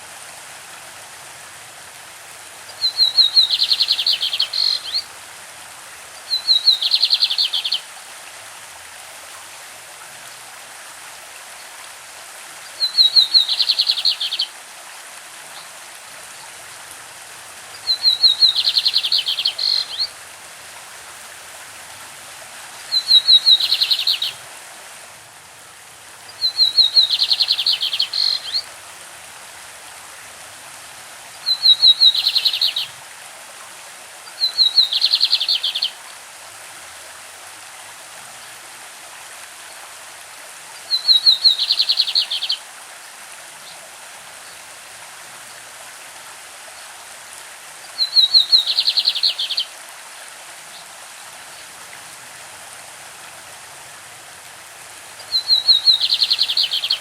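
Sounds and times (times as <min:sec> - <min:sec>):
stream rushing: 0:00.0 - 0:57.0
bird singing trills: 0:02.8 - 0:05.0, 0:06.3 - 0:07.8, 0:12.8 - 0:14.5, 0:17.8 - 0:20.1, 0:22.9 - 0:24.4, 0:26.4 - 0:28.6, 0:31.5 - 0:32.9, 0:34.4 - 0:35.9, 0:40.9 - 0:42.6, 0:48.0 - 0:49.6, 0:55.2 - 0:57.0.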